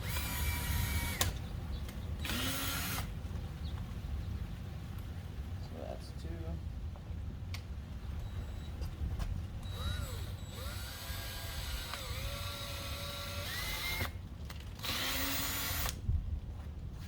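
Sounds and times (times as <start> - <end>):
power drill motor whine: 0.0 - 1.4, 2.2 - 3.1, 9.6 - 14.2, 14.8 - 16.0
drill boring through plastic: 9.6 - 14.2, 14.8 - 16.0.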